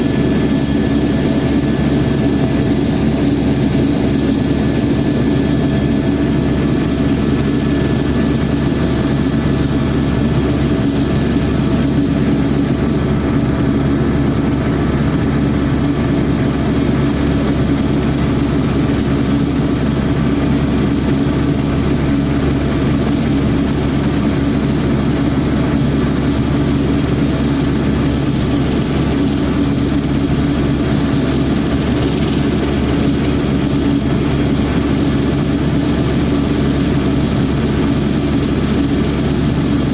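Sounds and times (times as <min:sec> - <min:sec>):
helicopter drone: 0:00.0 - 0:39.9.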